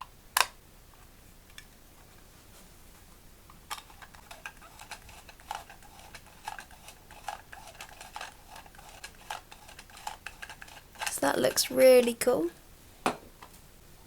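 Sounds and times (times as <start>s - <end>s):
plastic toy pieces clicking: 3.7s - 12.1s.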